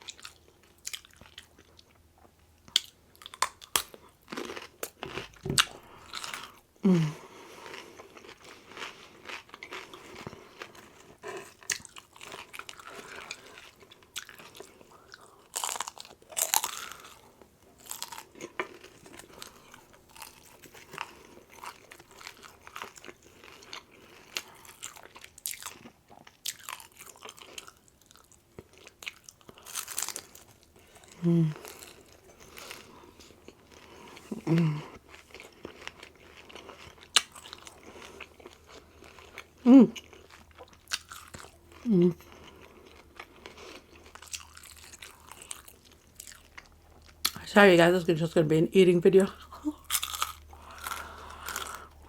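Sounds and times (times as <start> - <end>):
chewing crunchy fried food: 0.0 - 48.1, 49.2 - 52.0.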